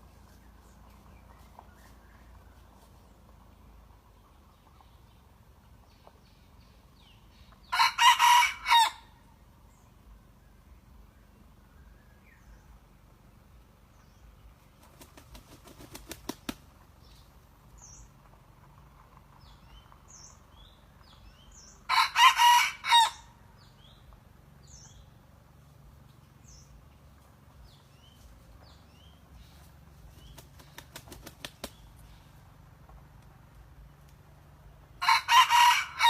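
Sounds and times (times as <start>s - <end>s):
rooster crowing: 7.7s - 9.2s, 21.9s - 23.3s, 35.0s - 36.0s
rooster wings clapping: 14.8s - 16.6s, 30.2s - 31.9s
small birds chirping: 26.1s - 32.8s.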